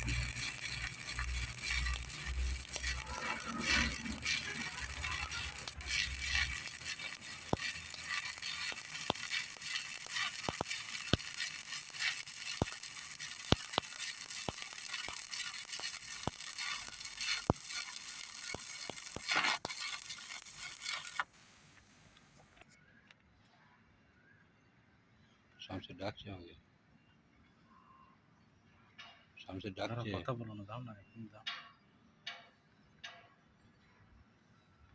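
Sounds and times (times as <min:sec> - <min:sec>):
spatter pops: 0:00.0 - 0:22.6
welding arc crackling: 0:00.0 - 0:22.6.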